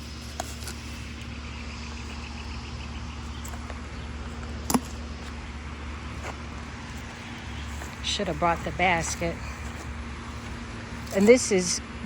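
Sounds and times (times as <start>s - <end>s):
low outdoor rumble: 0.0s - 12.0s.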